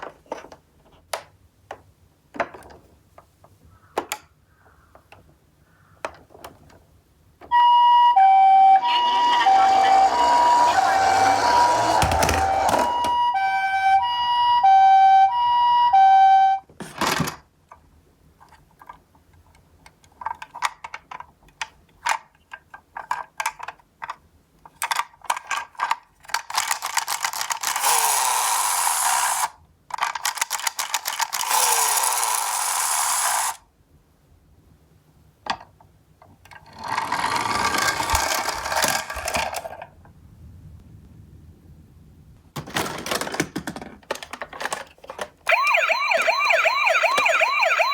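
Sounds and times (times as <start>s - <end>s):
two-tone ambulance siren: 7.5s - 16.6s, 45.5s - 47.9s
toy cars clicking and knocking: 9.0s - 13.2s, 16.8s - 33.6s, 35.5s - 39.9s, 42.6s - 47.9s
toy cars rattling down cardboard: 9.0s - 13.2s, 24.7s - 33.6s, 36.6s - 39.9s, 42.6s - 45.4s.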